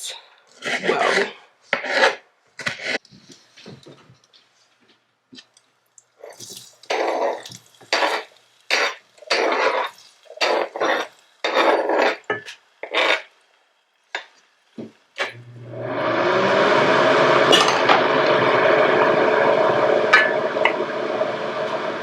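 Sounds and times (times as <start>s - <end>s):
utensil scraping a pan: 0.5s - 3.5s, 6.9s - 13.5s.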